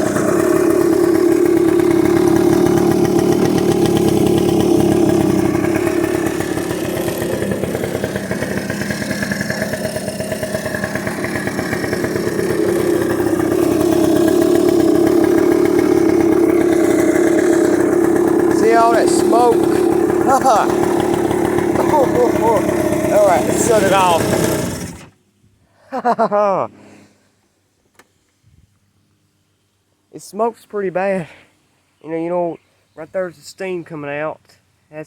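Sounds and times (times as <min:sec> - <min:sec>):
small engine idling: 0:00.0 - 0:25.4.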